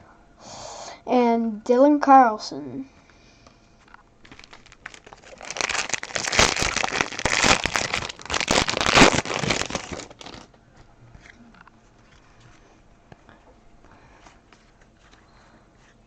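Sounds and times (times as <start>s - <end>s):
foil wrapper crinkling and tearing: 4.2s - 10.6s.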